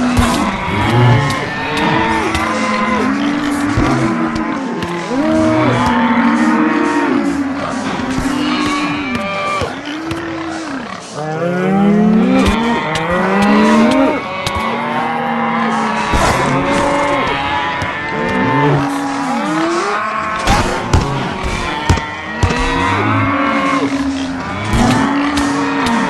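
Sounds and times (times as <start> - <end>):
low pitched groans: 0.0 - 9.1, 16.0 - 26.0.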